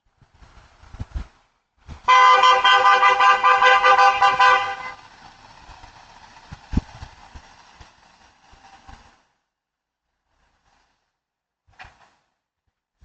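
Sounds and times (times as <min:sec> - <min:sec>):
car horn blast: 0:02.1 - 0:05.0.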